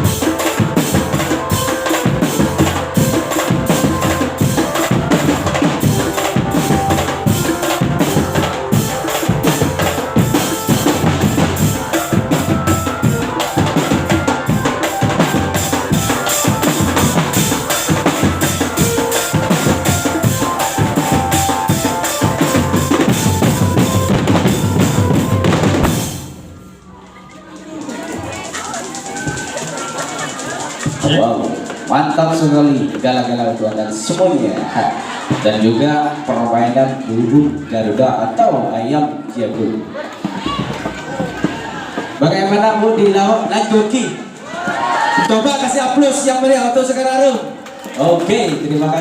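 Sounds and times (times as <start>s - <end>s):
fast driving drum beat: 0.0s - 26.4s
live band music: 0.0s - 32.9s.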